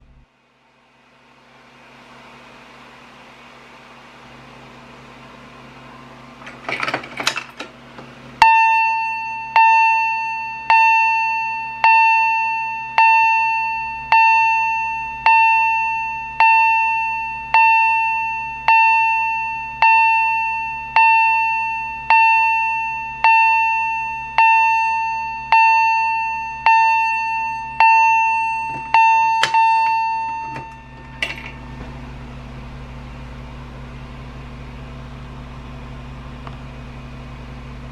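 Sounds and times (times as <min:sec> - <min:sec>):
fire alarm chime ringing: 0:08.4 - 0:31.9.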